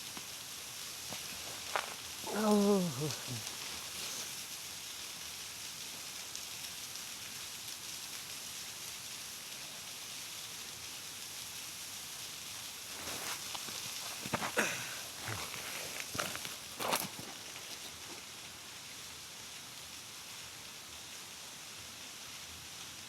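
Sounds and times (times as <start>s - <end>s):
waterfall rushing: 0.8s - 4.6s
faint rustling: 12.9s - 18.3s.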